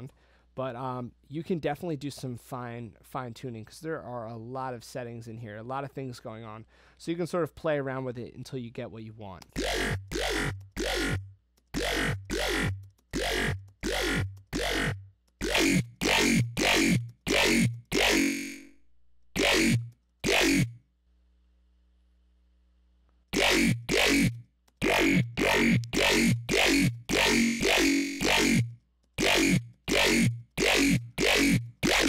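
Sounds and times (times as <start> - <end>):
dubstep bass hits dropping in pitch: 9.6 - 20.8, 23.4 - 32.0.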